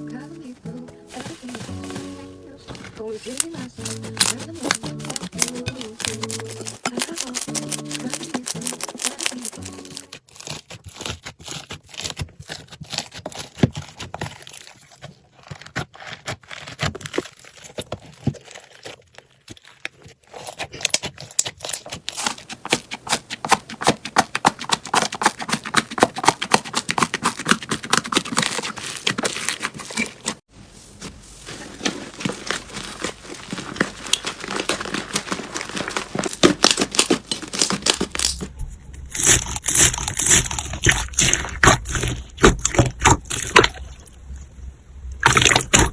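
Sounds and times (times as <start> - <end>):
slime squeezed crackling and popping: 45.2 - 45.9.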